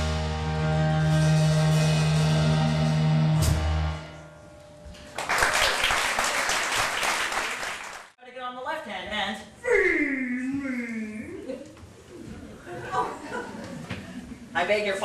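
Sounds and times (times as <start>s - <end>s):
applause: 5.1s - 8.2s.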